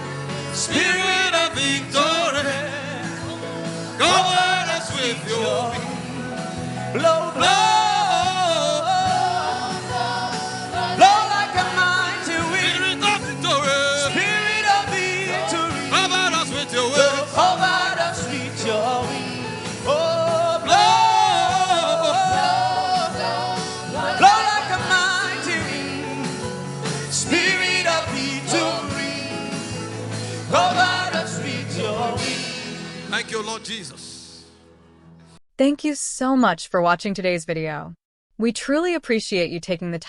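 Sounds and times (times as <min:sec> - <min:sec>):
person singing: 0:04.0 - 0:26.4.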